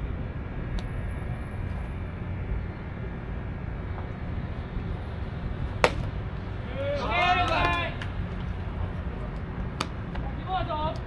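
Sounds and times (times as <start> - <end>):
outdoor background noise: 0.0 - 11.0
sharp crack: 5.6 - 10.3.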